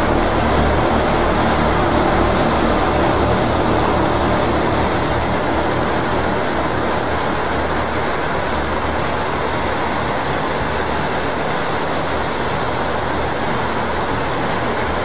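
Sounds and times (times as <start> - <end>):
loud rushing noise: 0.0 - 9.8
low hum: 0.0 - 15.0.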